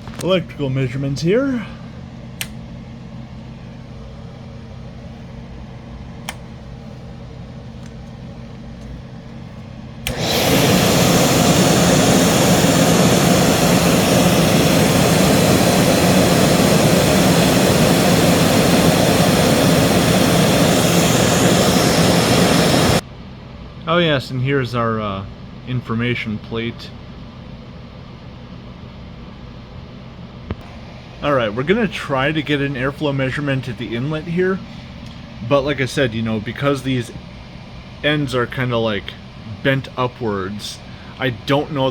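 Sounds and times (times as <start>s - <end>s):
vacuum cleaner motor running: 8.8s - 23.0s.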